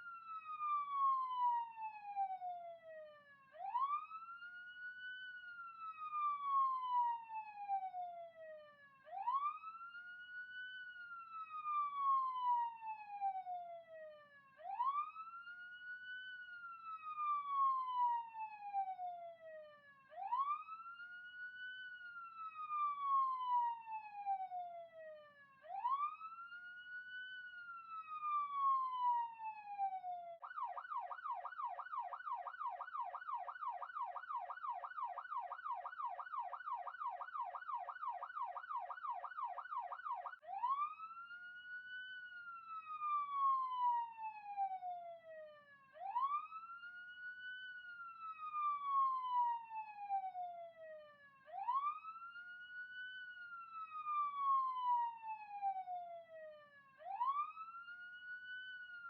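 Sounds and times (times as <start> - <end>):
police siren wailing: 0.0 - 59.0.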